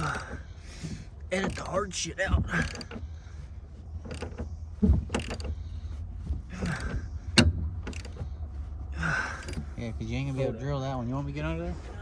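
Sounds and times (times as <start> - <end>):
hand tools clicking and knocking metal: 0.0 - 3.1, 4.0 - 5.6, 6.5 - 8.3
low steady rumble: 0.0 - 12.0.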